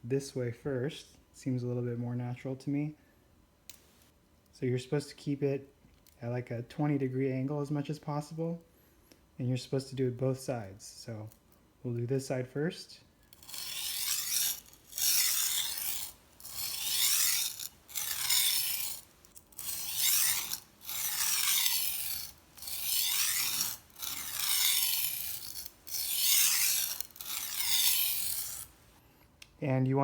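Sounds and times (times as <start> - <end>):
knife scraping on sharpening stone: 13.4 - 28.8.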